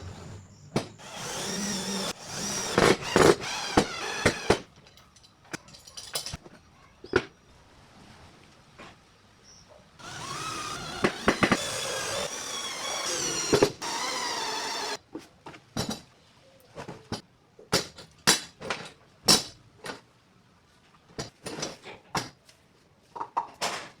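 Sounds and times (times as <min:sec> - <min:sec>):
small power tool running: 0:01.0 - 0:04.6, 0:10.0 - 0:15.0.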